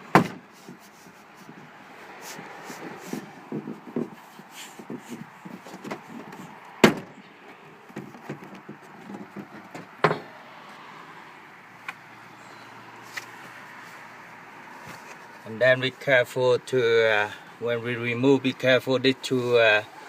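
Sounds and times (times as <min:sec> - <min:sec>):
plastic panel knocking and rustling: 0:00.0 - 0:00.8, 0:03.2 - 0:04.2, 0:04.8 - 0:07.2, 0:07.8 - 0:10.3.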